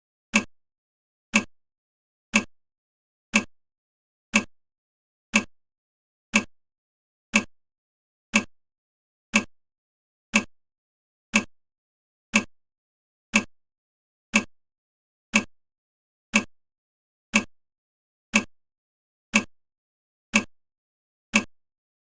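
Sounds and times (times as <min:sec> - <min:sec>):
clock ticking: 0:00.3 - 0:00.5, 0:01.3 - 0:01.5, 0:02.3 - 0:02.5, 0:03.3 - 0:03.5, 0:04.3 - 0:04.5, 0:05.3 - 0:05.5, 0:06.3 - 0:06.5, 0:07.3 - 0:07.5, 0:08.3 - 0:08.5, 0:09.3 - 0:09.5, 0:10.3 - 0:10.5, 0:11.3 - 0:11.5, 0:12.3 - 0:12.5, 0:13.3 - 0:13.5, 0:14.3 - 0:14.5, 0:15.3 - 0:15.5, 0:16.3 - 0:16.5, 0:17.3 - 0:17.5, 0:18.3 - 0:18.5, 0:19.3 - 0:19.5, 0:20.3 - 0:20.5, 0:21.3 - 0:21.6.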